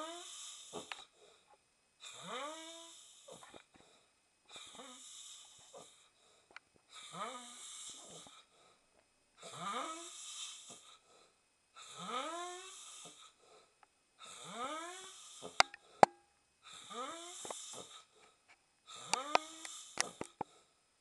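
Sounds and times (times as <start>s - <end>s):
man snoring: 2.0s - 3.5s, 4.5s - 6.0s, 6.9s - 8.5s, 9.4s - 11.0s, 11.8s - 13.4s, 14.2s - 15.7s, 16.7s - 18.1s, 18.9s - 20.4s.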